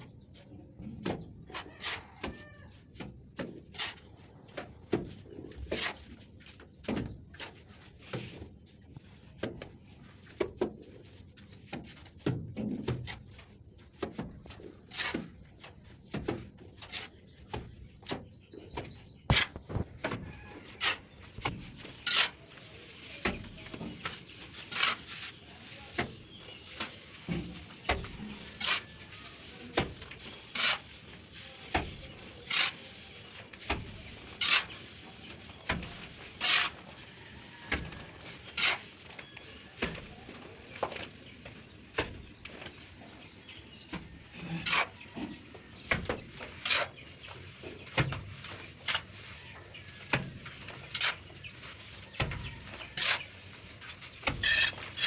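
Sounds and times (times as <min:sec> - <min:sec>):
trowel slapping and scraping mortar: 0:00.9 - 0:55.0.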